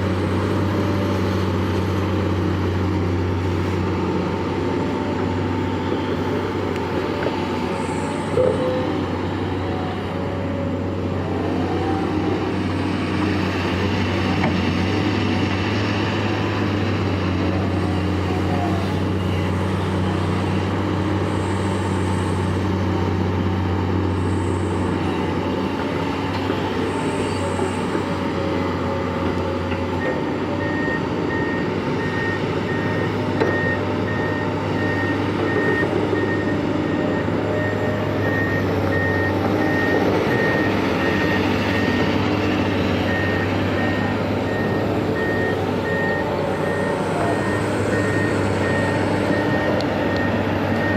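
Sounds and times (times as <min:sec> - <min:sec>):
excavator diesel engine running: 0:00.0 - 0:50.9
back-up alarm beeping: 0:30.0 - 0:42.2, 0:43.0 - 0:50.9.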